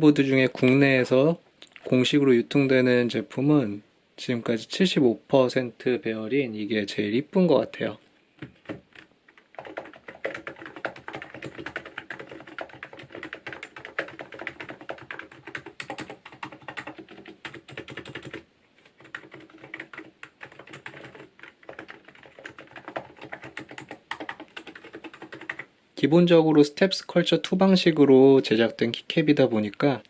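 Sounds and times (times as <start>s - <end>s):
rapid keyboard typing: 8.4s - 25.7s.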